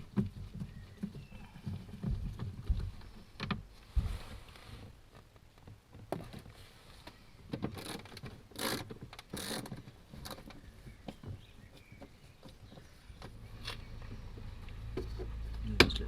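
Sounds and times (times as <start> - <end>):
scraping rustles: 0.0 - 15.6.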